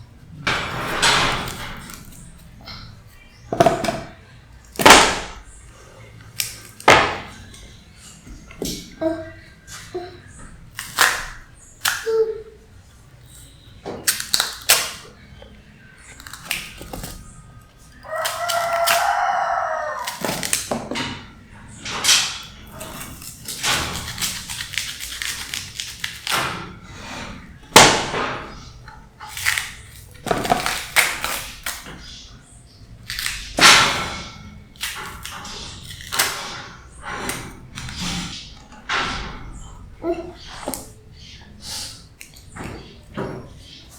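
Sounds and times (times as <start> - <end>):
dishes and utensils clattering: 0.0 - 6.2, 16.0 - 32.4, 33.0 - 43.9.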